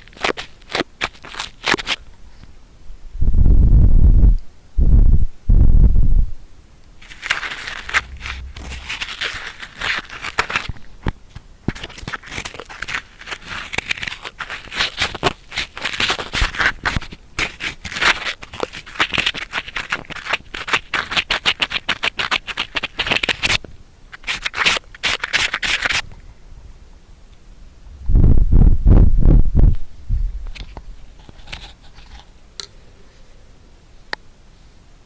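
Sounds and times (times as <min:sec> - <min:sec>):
cotton swab scratching in ear: 0:07.0 - 0:10.6.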